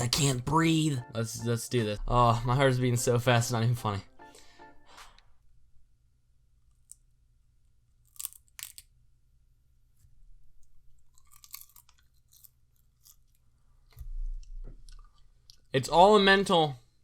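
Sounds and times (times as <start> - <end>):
person biting and chewing pepper: 7.9 - 9.0, 10.6 - 15.7.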